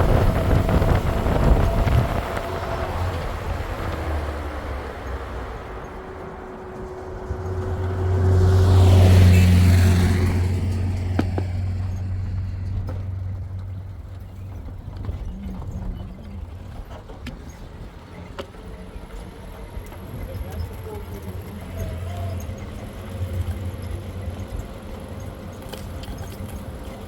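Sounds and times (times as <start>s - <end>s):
motor vehicle passing: 0.0s - 16.9s.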